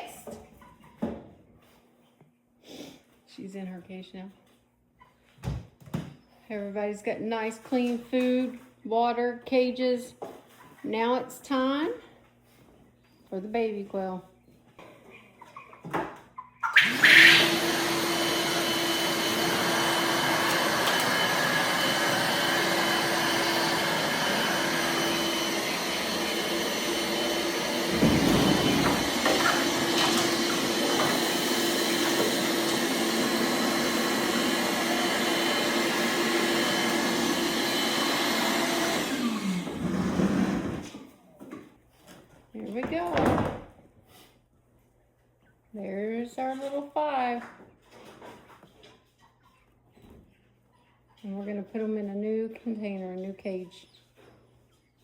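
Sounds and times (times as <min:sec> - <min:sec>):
vacuum cleaner running: 0:16.8 - 0:41.0.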